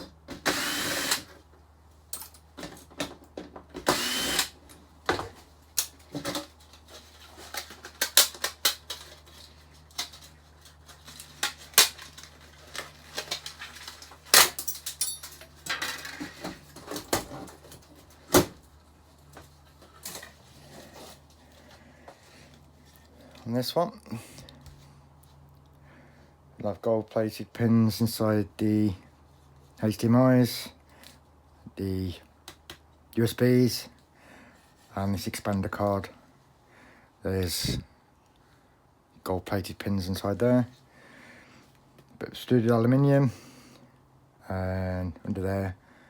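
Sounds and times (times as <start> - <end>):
power screwdriver whirring: 0.4 - 1.3, 3.8 - 4.6.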